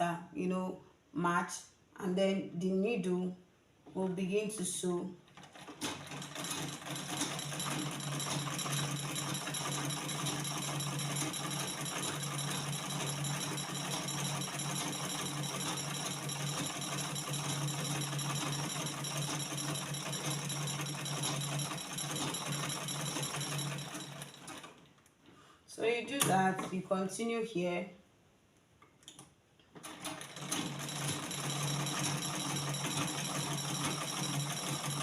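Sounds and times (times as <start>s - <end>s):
treadle sewing machine running: 5.3s - 24.9s, 29.8s - 35.0s.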